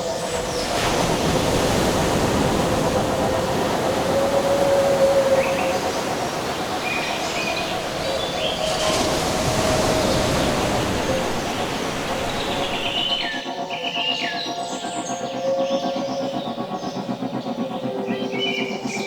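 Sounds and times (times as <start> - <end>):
steady rushing noise: 0.0 - 13.5
low sustained tone: 0.0 - 19.0.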